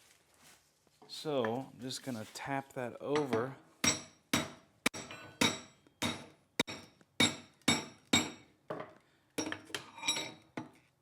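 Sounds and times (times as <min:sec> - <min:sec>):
hammer striking metal on anvil: 0:03.2 - 0:08.4.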